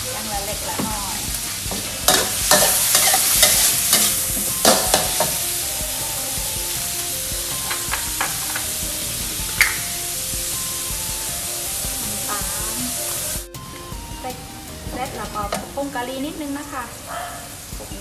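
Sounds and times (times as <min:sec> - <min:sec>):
shrimp sizzling in hot oil: 0:00.0 - 0:18.0
spatula scraping a pan: 0:01.5 - 0:05.5.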